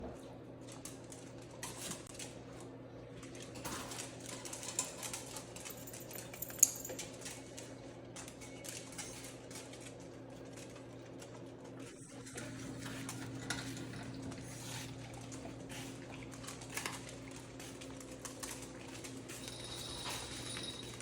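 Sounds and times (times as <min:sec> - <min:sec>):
low electrical hum: 0:00.0 - 0:21.0
dog claws clicking on hard floor: 0:03.6 - 0:11.4, 0:16.4 - 0:21.0.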